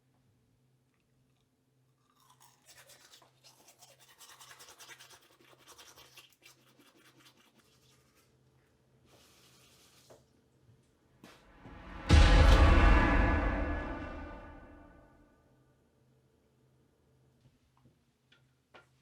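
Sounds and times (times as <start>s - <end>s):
low hum: 11.6s - 15.0s.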